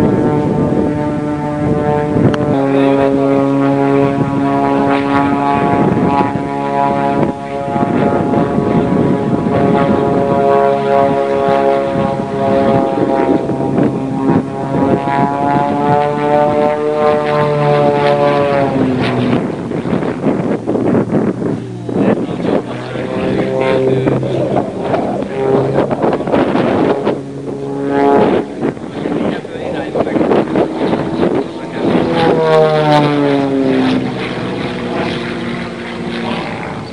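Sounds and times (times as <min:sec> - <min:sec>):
propeller plane engine drone: 0:00.0 - 0:36.9.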